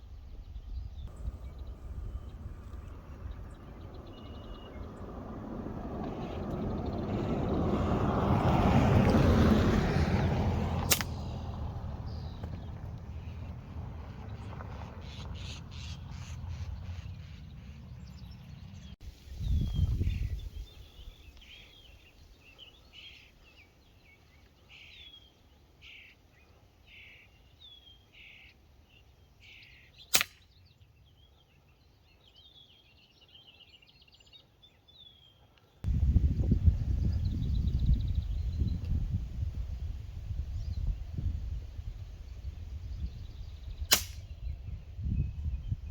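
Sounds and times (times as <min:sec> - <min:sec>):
low rumble: 0:00.1 - 0:09.2
air rifle shot: 0:10.8 - 0:11.4, 0:30.1 - 0:30.4, 0:43.9 - 0:44.3.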